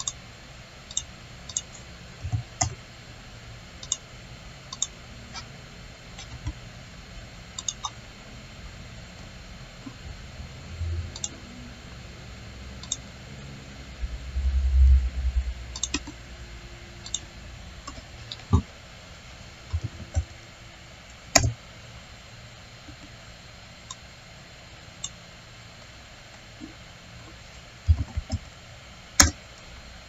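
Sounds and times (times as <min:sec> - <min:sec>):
computer mouse clicks: 0:00.9 - 0:02.8, 0:03.8 - 0:04.0, 0:04.7 - 0:05.4, 0:06.2 - 0:06.6, 0:07.6 - 0:08.0, 0:11.1 - 0:11.4, 0:12.8 - 0:13.0, 0:15.7 - 0:16.2, 0:17.0 - 0:17.2, 0:21.4 - 0:21.6, 0:29.2 - 0:29.4
dull low bumping: 0:14.0 - 0:16.6.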